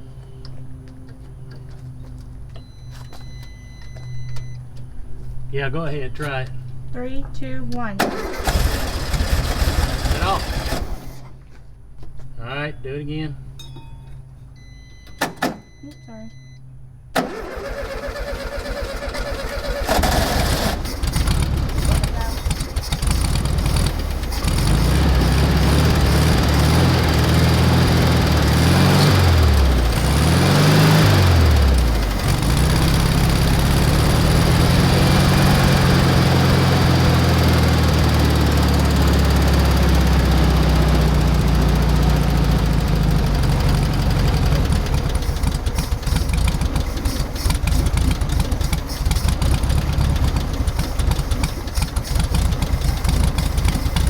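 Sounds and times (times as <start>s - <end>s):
car engine revving and idling: 8.1s - 11.4s, 18.2s - 54.0s.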